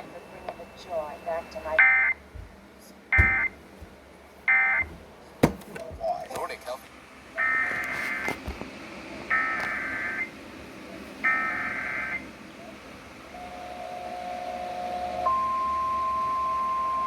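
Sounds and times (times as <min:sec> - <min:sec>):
loud attention signal tone: 0:00.0 - 0:02.2, 0:03.2 - 0:03.6, 0:09.3 - 0:10.3, 0:11.2 - 0:12.3, 0:13.4 - 0:17.0
quiet steady tone: 0:00.0 - 0:03.6, 0:11.2 - 0:17.0.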